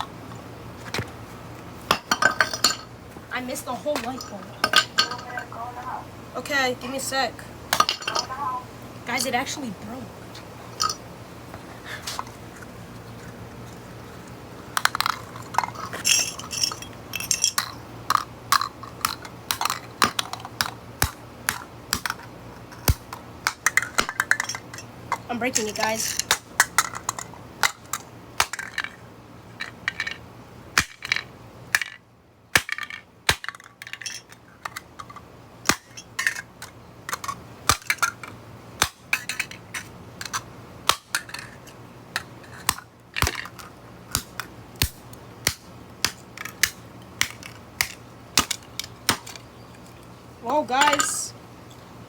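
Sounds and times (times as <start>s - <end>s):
glass pieces crunching: 14.9s - 17.8s.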